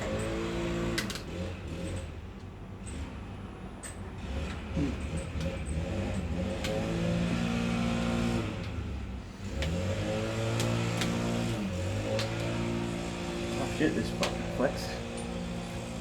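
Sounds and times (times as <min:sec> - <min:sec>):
engine revving: 0:04.2 - 0:16.0
sharp handling clicks: 0:10.5 - 0:11.2, 0:12.1 - 0:12.6.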